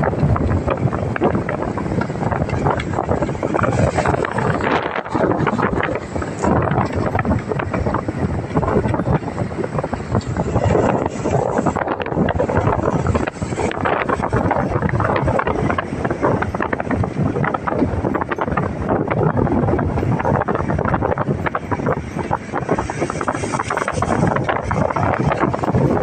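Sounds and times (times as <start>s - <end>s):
crackling wind gusts: 0.0s - 26.0s
storm wind buffeting microphone: 0.0s - 26.0s.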